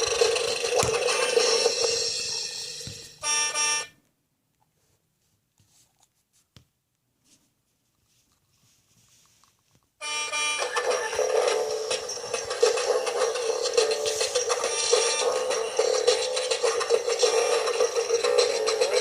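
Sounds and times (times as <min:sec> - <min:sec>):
electronic horn beeps: 0:03.2 - 0:04.0, 0:10.0 - 0:11.8
children's song: 0:10.5 - 0:19.0.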